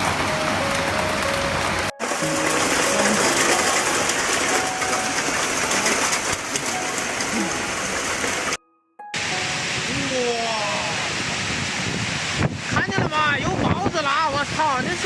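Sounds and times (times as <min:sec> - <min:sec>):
rushing water: 0:00.0 - 0:15.0.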